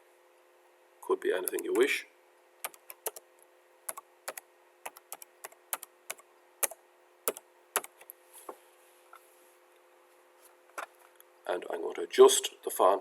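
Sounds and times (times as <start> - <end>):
faint steady hum: 0.0 - 13.0
computer keyboard typing: 1.4 - 1.9, 2.6 - 3.2, 3.9 - 8.0.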